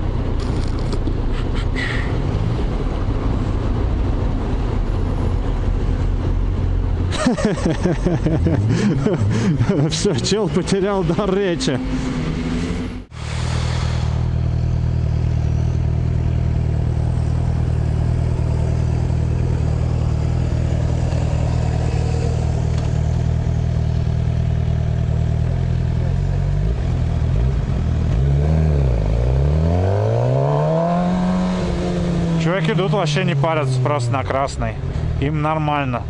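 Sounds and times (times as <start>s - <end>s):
motorcycle engine running: 14.2s - 33.8s.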